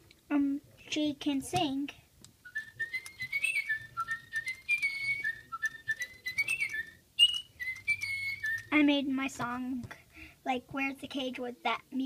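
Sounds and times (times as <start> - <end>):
toy bird electronic chirps: 2.5 - 8.8.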